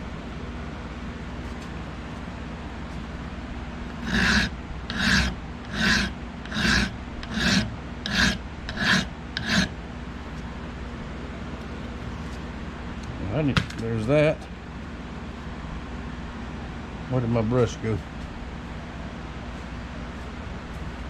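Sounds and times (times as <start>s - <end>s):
hand file scraping steel: 3.9s - 9.7s.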